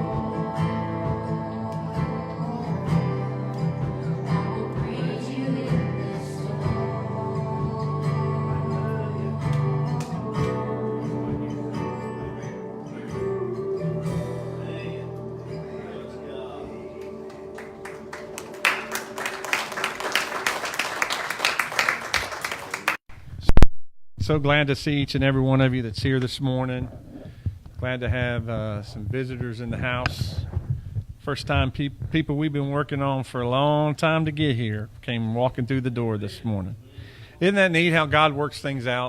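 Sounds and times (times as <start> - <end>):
acoustic guitar: 0.0 - 20.7
people singing: 0.0 - 20.8
congregation clapping: 9.5 - 10.6, 16.8 - 23.0.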